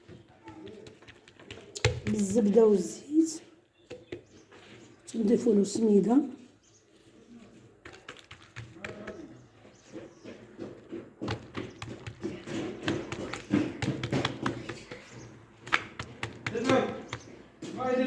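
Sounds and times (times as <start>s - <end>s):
birds calling: 0.0s - 6.0s, 6.6s - 18.0s
hands slapping dough: 7.8s - 9.4s, 11.1s - 17.5s.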